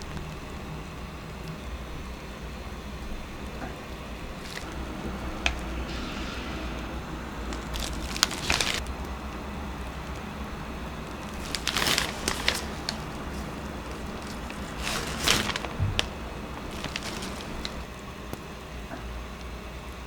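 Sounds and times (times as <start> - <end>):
low steady hum: 0.0 - 19.5
rustling and scraping: 3.6 - 8.9, 11.0 - 17.9.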